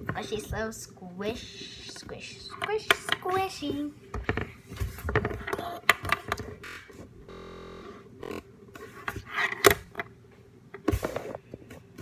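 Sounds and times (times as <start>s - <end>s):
steady buzzing tone: 6.6s - 8.6s.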